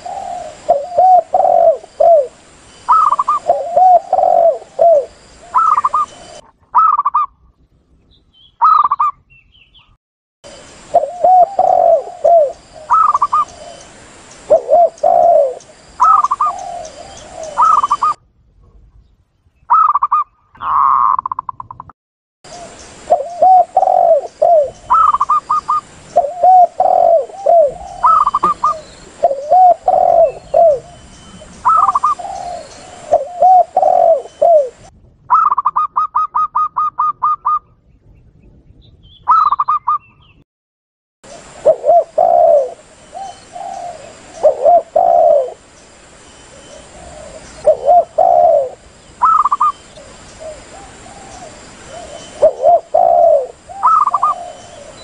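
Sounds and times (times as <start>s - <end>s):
higher-pitched dove coos: 0.0s - 7.3s, 10.9s - 13.9s, 14.5s - 18.2s, 19.7s - 21.8s, 22.6s - 37.8s, 41.3s - 45.6s, 46.5s - 55.0s
low rolling dove coos: 0.0s - 7.3s, 10.9s - 18.8s, 22.5s - 37.9s, 41.3s - 45.7s, 46.5s - 55.0s.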